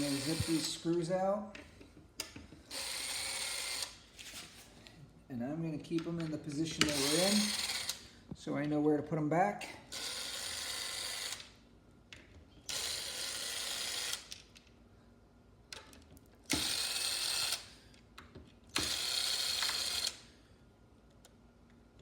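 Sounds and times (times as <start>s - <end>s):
cordless drill spinning out screws: 0.0s - 1.0s, 2.7s - 4.0s, 6.7s - 8.1s, 9.9s - 11.5s, 12.7s - 14.3s, 16.5s - 17.7s, 18.8s - 20.2s.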